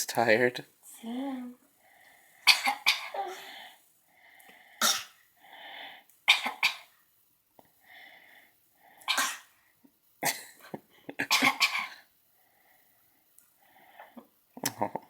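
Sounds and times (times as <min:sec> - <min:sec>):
baby fake coughing: 0:02.4 - 0:03.6, 0:04.8 - 0:05.2, 0:06.3 - 0:06.9, 0:09.1 - 0:09.5, 0:11.2 - 0:12.0.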